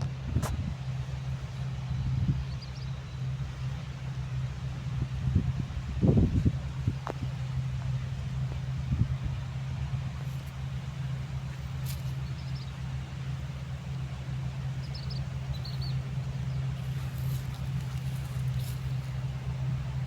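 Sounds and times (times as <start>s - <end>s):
diesel engine droning: 0.0s - 20.0s.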